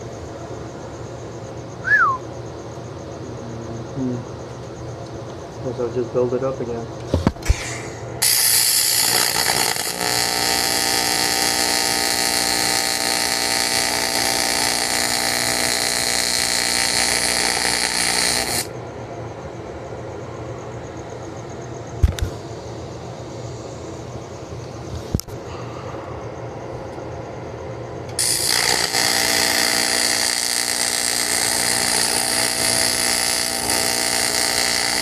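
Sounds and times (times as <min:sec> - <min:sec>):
mig welder crackling hiss: 0:07.1 - 0:18.7, 0:28.1 - 0:35.0.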